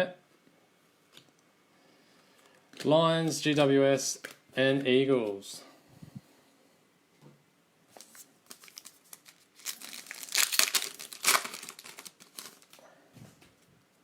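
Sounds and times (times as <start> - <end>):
wrapper crinkling and tearing: 8.0 - 12.8.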